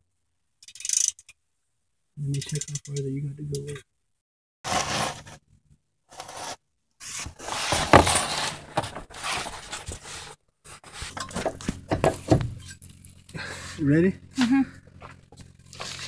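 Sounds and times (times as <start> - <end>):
metal rubbing and scraping: 4.7 - 5.4, 6.1 - 14.4, 15.4 - 16.0.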